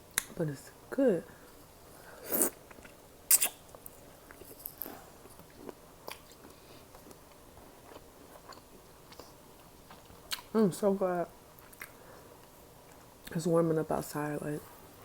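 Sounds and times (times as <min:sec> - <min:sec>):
person biting and chewing: 0:02.2 - 0:03.6.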